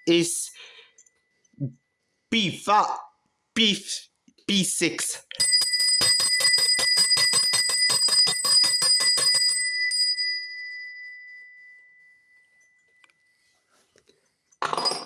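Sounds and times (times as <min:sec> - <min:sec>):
hand cowbell ringing: 0:05.4 - 0:13.2.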